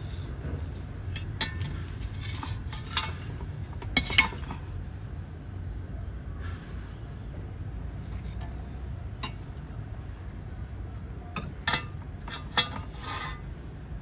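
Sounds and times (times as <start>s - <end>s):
utensil scraping: 0.0s - 4.6s, 11.4s - 13.6s
utensils clinking against dishes: 1.1s - 4.6s, 9.2s - 9.6s, 11.3s - 13.4s.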